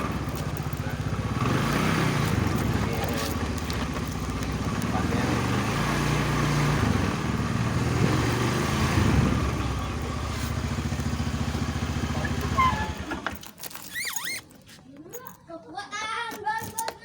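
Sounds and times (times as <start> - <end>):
motorcycle engine idling: 0.0 - 13.4.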